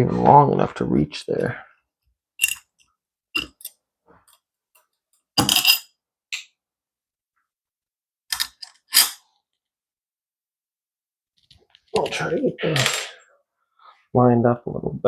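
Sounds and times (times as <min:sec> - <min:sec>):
metal parts clicking and clattering: 0:02.4 - 0:02.8, 0:05.4 - 0:05.9.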